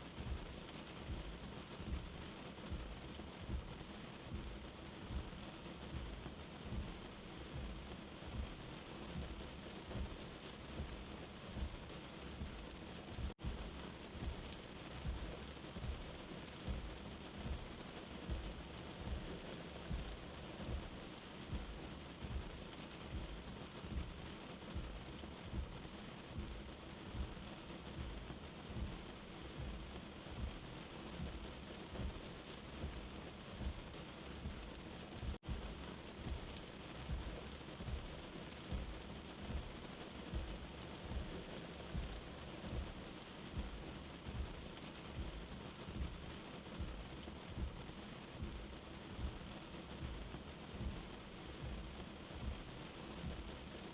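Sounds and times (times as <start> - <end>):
steady rain falling: 0.0 - 53.9.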